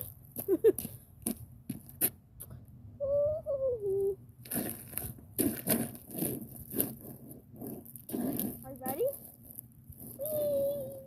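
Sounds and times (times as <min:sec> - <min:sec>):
crunching on icy ground: 0:04.4 - 0:11.0.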